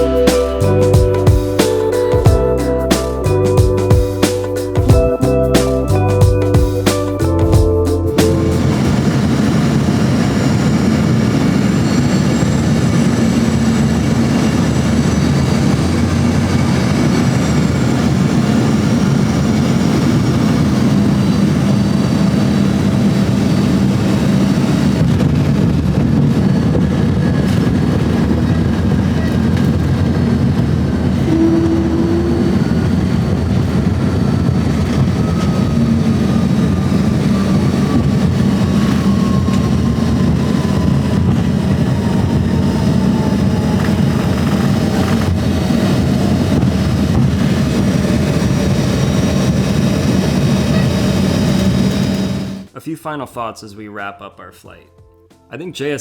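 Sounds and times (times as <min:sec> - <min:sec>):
jet engines rumbling and whining: 0:07.9 - 0:52.7
short cabin tone: 0:31.2 - 0:35.6.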